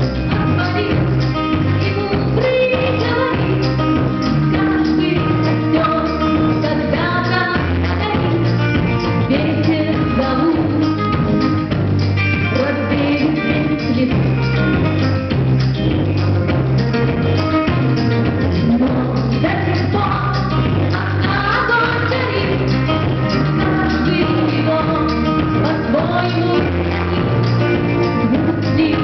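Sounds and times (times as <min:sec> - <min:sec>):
electric guitar: 0:00.0 - 0:29.0
steady drum beat: 0:13.6 - 0:29.0
person singing: 0:18.5 - 0:29.0.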